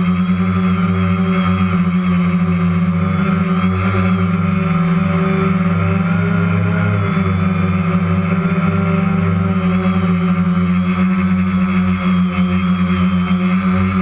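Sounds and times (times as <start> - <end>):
quadcopter droning hum: 0.0 - 14.0.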